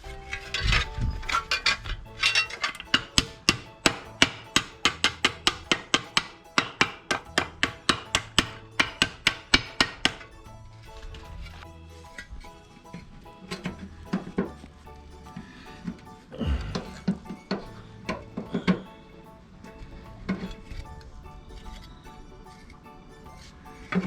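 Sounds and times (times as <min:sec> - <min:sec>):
background music: 0:00.0 - 0:24.0
hammer striking sheet steel: 0:00.1 - 0:10.4.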